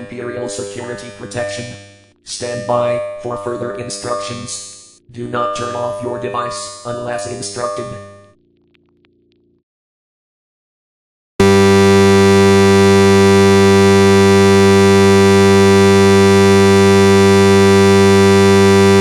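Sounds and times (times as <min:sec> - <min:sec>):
harsh synthesized buzzer tone: 0:11.4 - 0:19.0.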